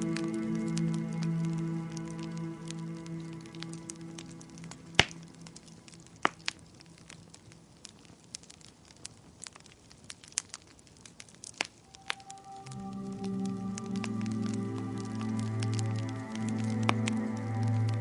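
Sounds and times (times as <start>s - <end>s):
soft music: 0.0s - 7.1s, 11.9s - 18.0s
wood fire crackling: 0.0s - 18.0s.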